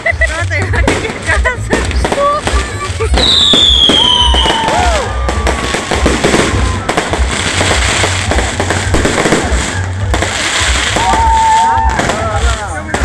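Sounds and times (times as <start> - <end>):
fireworks bangs and crackles: 0.0 - 13.0
falling firework whistles: 3.1 - 9.8, 10.4 - 12.4.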